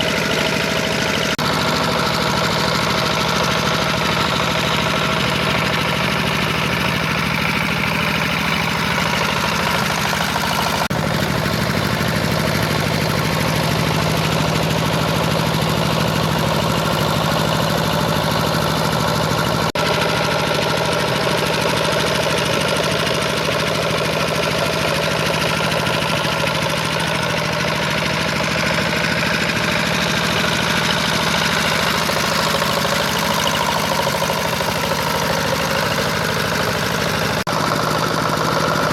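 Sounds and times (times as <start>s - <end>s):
tiller engine running: 0.0s - 38.9s.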